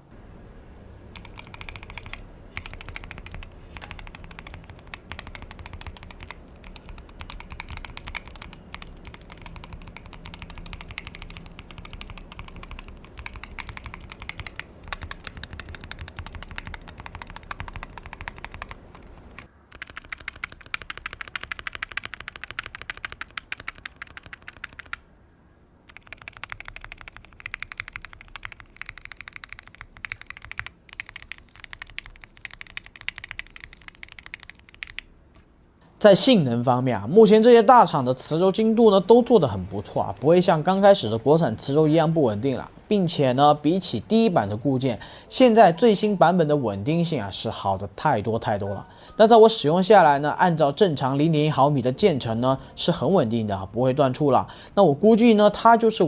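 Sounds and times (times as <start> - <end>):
keyboard typing: 1.1 - 25.0, 25.9 - 35.4.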